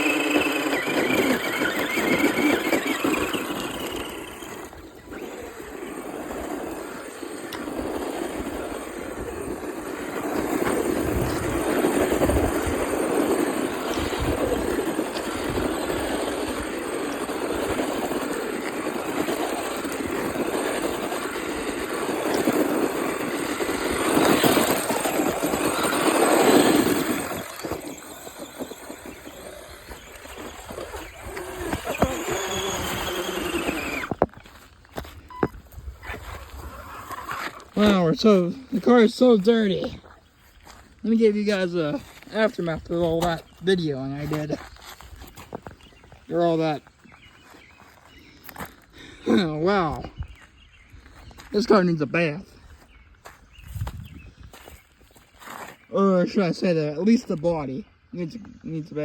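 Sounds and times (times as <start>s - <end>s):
rc car motor whining: 0.0s - 40.2s
wheels scrabbling on dirt: 0.0s - 59.0s.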